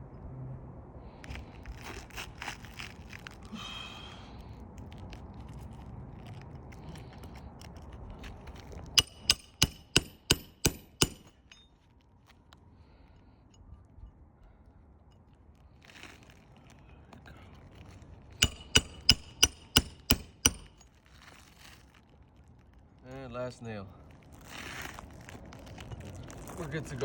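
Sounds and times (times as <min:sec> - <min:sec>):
hammer striking nail: 0:09.0 - 0:11.6, 0:18.4 - 0:20.8.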